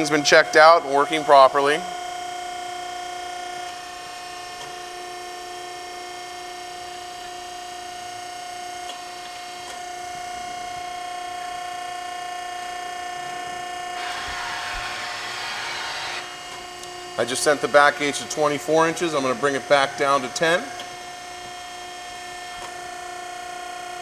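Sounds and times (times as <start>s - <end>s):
back gauge whirring: 13.9s - 22.6s.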